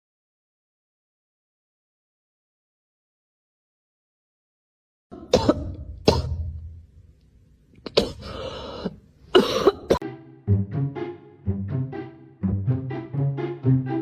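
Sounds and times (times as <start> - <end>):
plucked-sounding music: 10.0 - 14.0.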